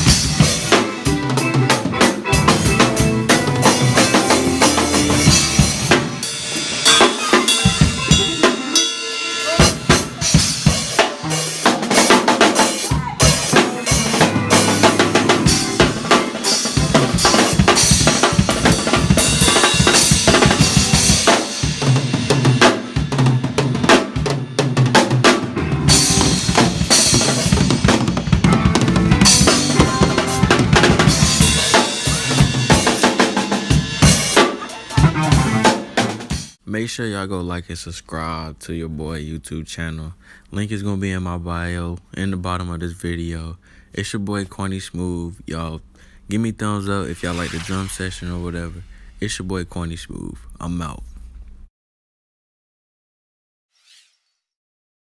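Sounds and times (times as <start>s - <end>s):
band instruments holding low notes: 0.0s - 23.9s, 24.8s - 36.4s
drum kit with cymbals: 0.0s - 36.6s, 47.1s - 49.4s.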